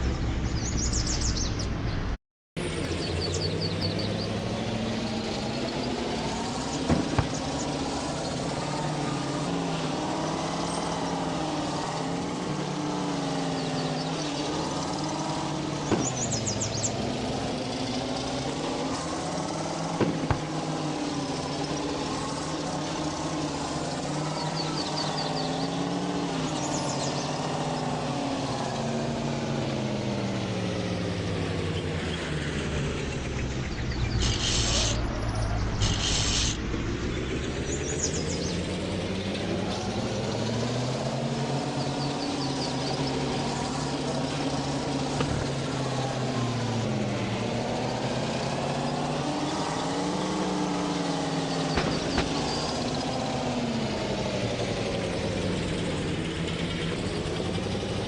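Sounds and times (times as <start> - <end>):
birds chirping faintly: 0.0 - 55.8
truck engine running: 0.0 - 58.0
sharp knocks: 19.9 - 20.6.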